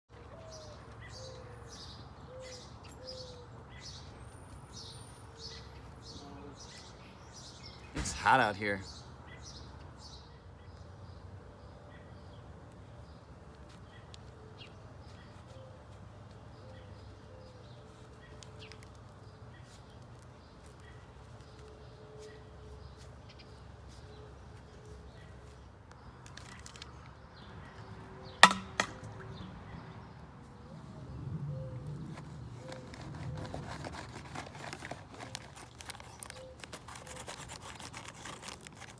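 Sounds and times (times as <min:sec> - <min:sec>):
faint outdoor background: 0:00.1 - 0:38.9
hard object knocking on a surface: 0:28.4 - 0:29.0.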